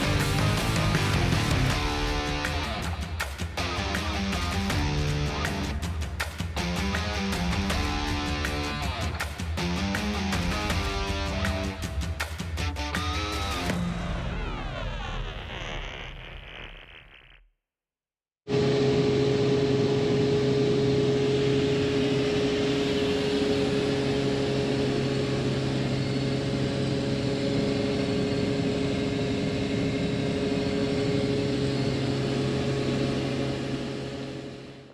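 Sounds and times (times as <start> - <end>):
combine harvester drone: 18.5 - 34.9.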